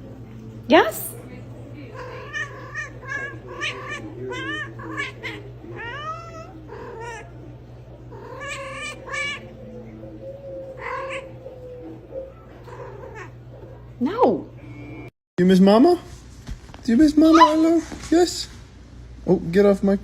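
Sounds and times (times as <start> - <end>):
cat meowing: 1.9 - 7.4, 8.1 - 9.7, 10.5 - 13.4, 17.2 - 17.6.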